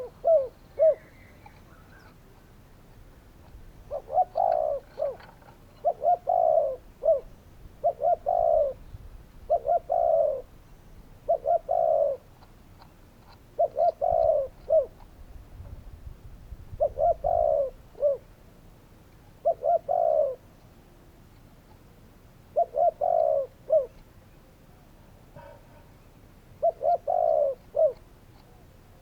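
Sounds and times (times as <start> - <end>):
dove cooing: 0.0 - 2.4, 3.8 - 10.6, 11.2 - 12.4, 13.3 - 15.1, 16.7 - 18.3, 19.4 - 20.5, 22.5 - 24.0, 25.4 - 29.0.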